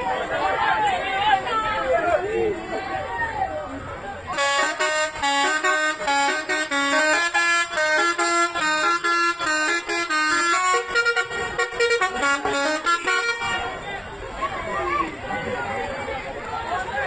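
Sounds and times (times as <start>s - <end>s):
bus horn playing a melody: 4.3s - 13.9s.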